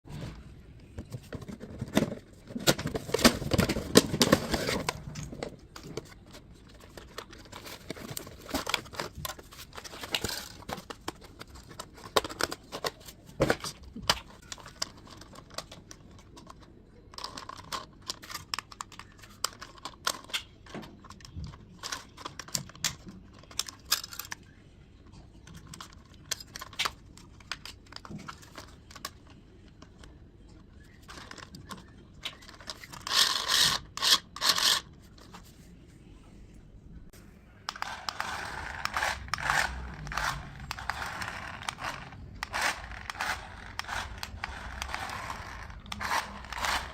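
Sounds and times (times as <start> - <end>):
plastic and cardboard crinkling: 0.8 - 22.8, 37.7 - 46.9.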